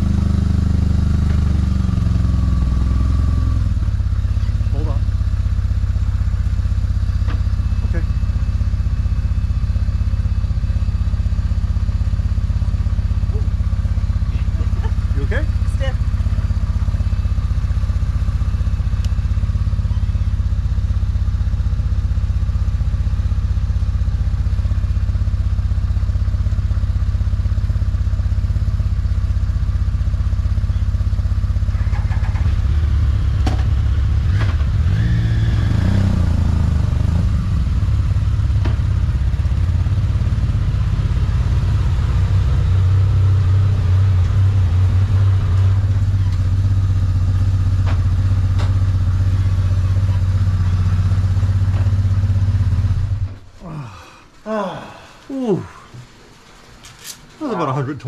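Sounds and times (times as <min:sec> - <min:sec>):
motorcycle engine running: 0:00.0 - 0:57.8.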